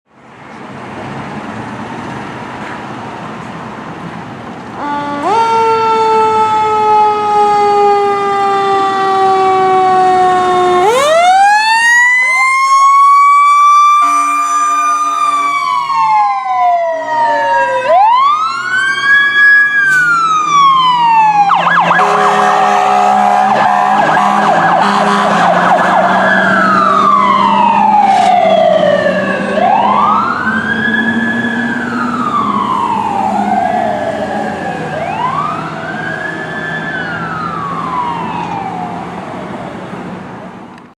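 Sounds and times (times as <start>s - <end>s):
traffic noise: 0.1s - 40.9s
sirens wailing: 4.7s - 40.0s
air horn blasts: 4.8s - 5.6s, 13.9s - 16.2s, 21.6s - 26.2s
long blast sliding down in pitch: 4.8s - 38.9s.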